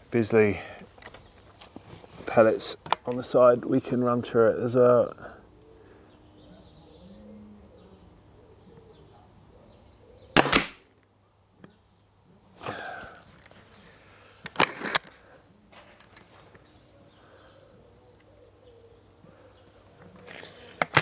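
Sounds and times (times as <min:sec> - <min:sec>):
air rifle shot: 0:10.4 - 0:10.9
rifle barrel clicks: 0:10.4 - 0:10.9, 0:14.4 - 0:15.2, 0:20.2 - 0:21.0
rifle mechanism clunk: 0:14.5 - 0:15.2, 0:20.2 - 0:21.0.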